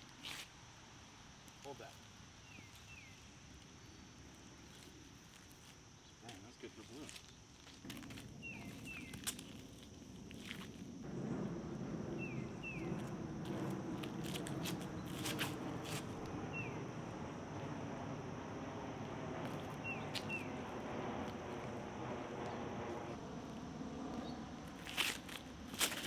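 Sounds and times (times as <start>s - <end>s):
low rustle: 7.9s - 26.0s
bird chirping: 16.5s - 16.8s, 19.6s - 20.5s.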